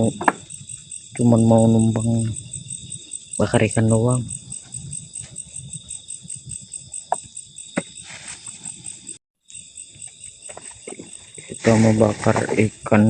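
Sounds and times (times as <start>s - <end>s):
insects chirping: 0.0s - 13.0s.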